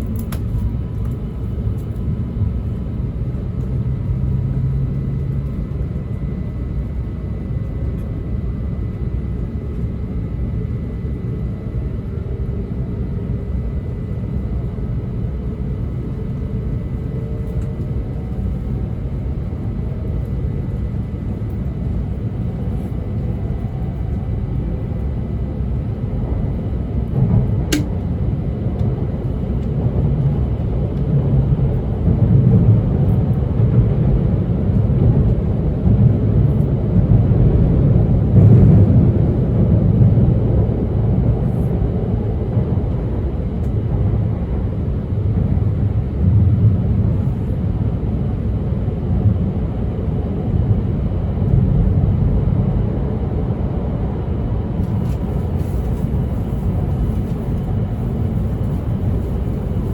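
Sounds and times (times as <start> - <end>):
train wheels rumbling on track: 22.6 - 47.4
sharp click: 27.7 - 28.0.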